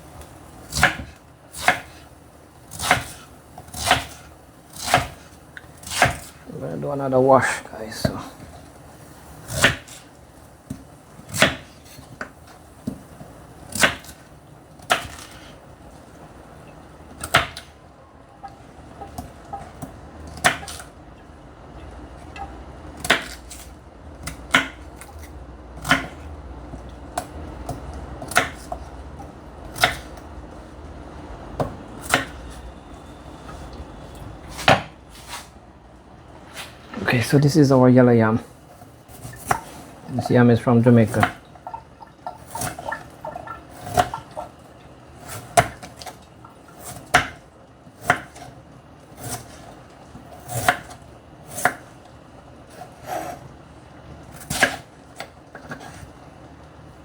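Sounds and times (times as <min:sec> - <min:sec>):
knife chopping on cutting board: 0:00.7 - 0:02.1, 0:02.7 - 0:06.4, 0:09.5 - 0:10.0, 0:10.7 - 0:12.0, 0:23.0 - 0:25.1, 0:25.8 - 0:26.2, 0:27.2 - 0:28.9, 0:29.7 - 0:30.2, 0:31.6 - 0:32.5, 0:34.5 - 0:35.5, 0:46.8 - 0:47.4, 0:48.0 - 0:48.5, 0:50.4 - 0:51.9, 0:54.4 - 0:56.0.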